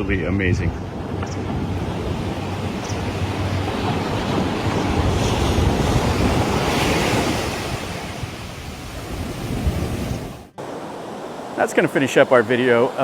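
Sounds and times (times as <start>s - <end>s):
wind buffeting microphone: 0.0s - 11.3s
surf breaking on a beach: 0.5s - 13.0s.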